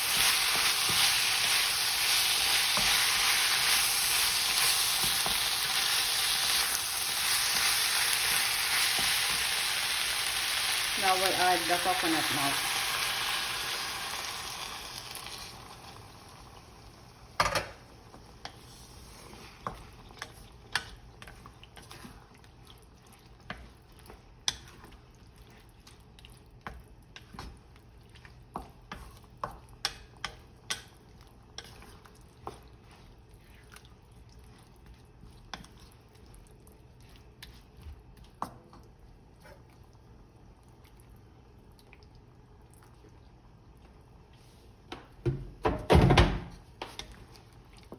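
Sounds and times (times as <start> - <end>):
food sizzling in a pan: 0.0 - 22.1.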